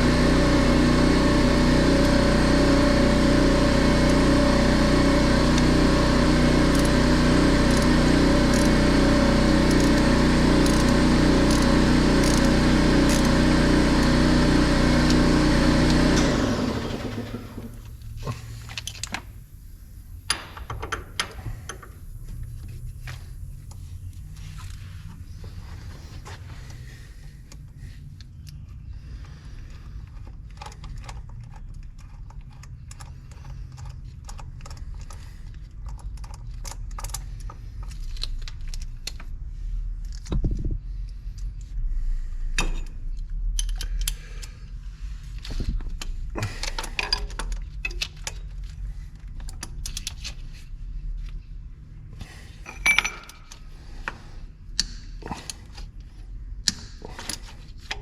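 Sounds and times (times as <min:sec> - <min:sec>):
steady low hum: 0:00.0 - 0:58.0
metallic clinks and knocks: 0:52.6 - 0:53.7.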